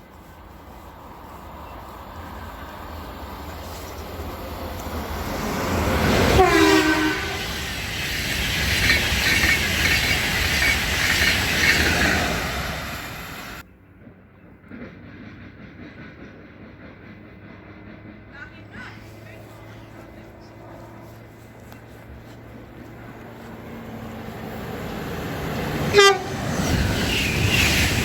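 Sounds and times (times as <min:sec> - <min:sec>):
electric train passing: 0:00.0 - 0:28.0
train horn blast: 0:06.1 - 0:07.6, 0:25.8 - 0:26.4
wheels rolling on rails: 0:07.2 - 0:13.6, 0:14.6 - 0:28.0.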